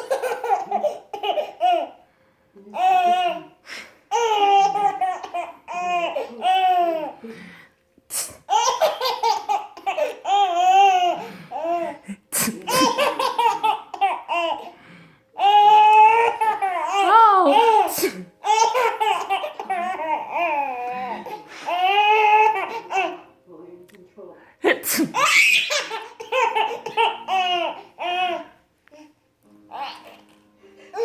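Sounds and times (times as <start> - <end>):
baby laughing: 0.0 - 2.0, 4.1 - 7.2, 8.5 - 12.0, 12.6 - 14.7, 15.4 - 23.2, 25.1 - 28.5
woman sneezing: 12.3 - 13.0, 17.4 - 18.3, 24.6 - 25.4.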